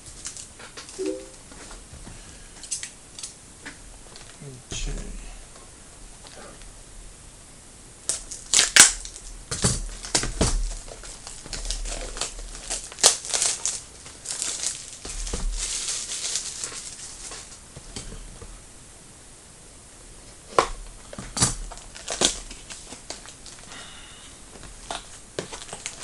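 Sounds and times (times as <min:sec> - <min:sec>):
plastic wrapping crinkling: 0:08.1 - 0:17.6, 0:21.0 - 0:23.7, 0:24.6 - 0:26.0.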